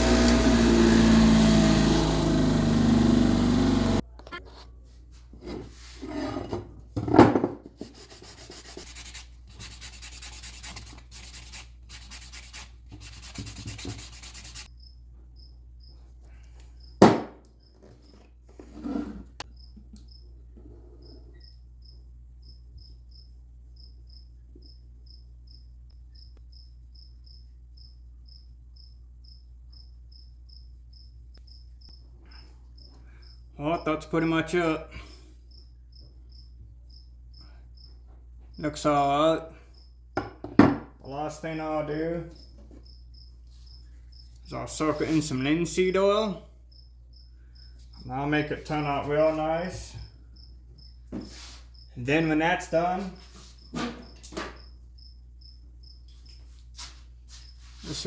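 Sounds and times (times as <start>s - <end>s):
bench grinder running: 0.0s - 4.0s
rubbing and handling noises: 7.6s - 14.7s, 42.3s - 45.4s, 51.1s - 51.9s, 56.1s - 58.0s
crickets chirping: 7.9s - 17.0s, 19.4s - 33.9s, 34.9s - 38.8s, 39.5s - 40.4s, 41.4s - 58.0s.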